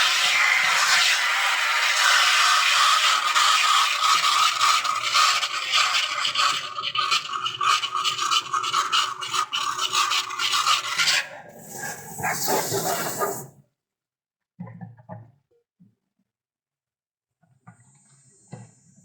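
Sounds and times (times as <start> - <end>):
rough scraping and scratching: 11.5 - 13.5.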